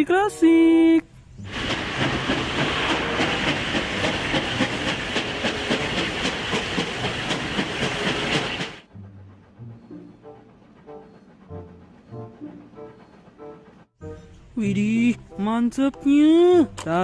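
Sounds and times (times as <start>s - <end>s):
steam train chuffing: 1.2s - 14.0s
rail clatter: 1.4s - 13.9s
steam hissing: 1.4s - 13.9s.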